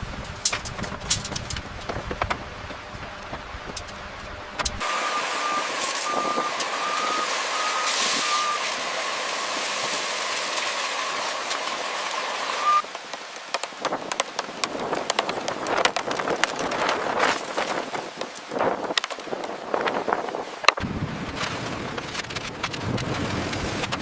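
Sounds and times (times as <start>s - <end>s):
clattering knocks and clicks: 0.2s - 4.0s
reversing alarm beeping: 4.8s - 12.8s.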